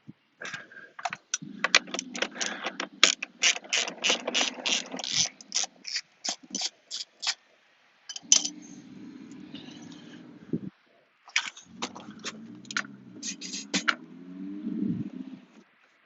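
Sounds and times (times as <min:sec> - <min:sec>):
ratchet wrench clicking: 0:02.0 - 0:07.4.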